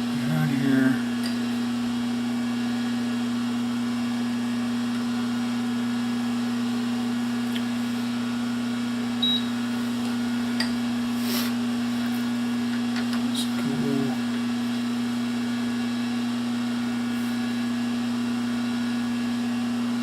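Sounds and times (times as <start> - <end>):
short scrape: 11.2 - 12.2.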